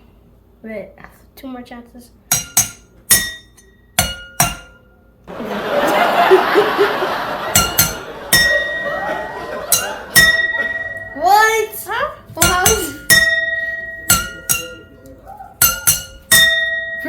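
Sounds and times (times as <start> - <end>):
drinking glasses clinking: 6.1 - 11.2, 12.4 - 17.0.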